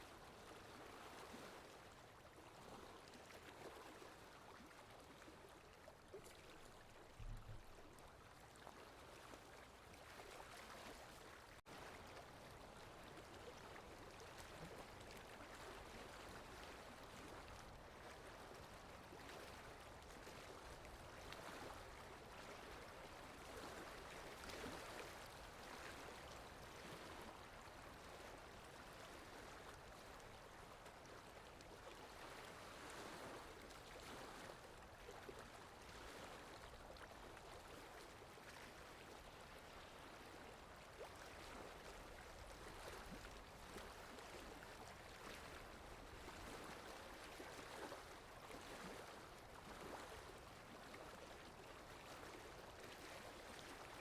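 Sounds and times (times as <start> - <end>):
faint water lapping: 0.0 - 54.0
wind: 0.0 - 54.0.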